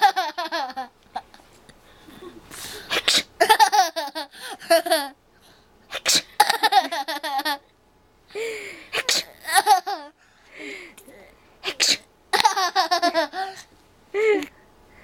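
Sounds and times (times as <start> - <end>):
child laughing: 0.0 - 1.4, 3.4 - 5.2, 6.4 - 7.6, 9.3 - 10.2, 12.4 - 14.5
person sneezing: 2.1 - 3.4, 5.9 - 6.4, 8.9 - 9.4, 11.6 - 12.1.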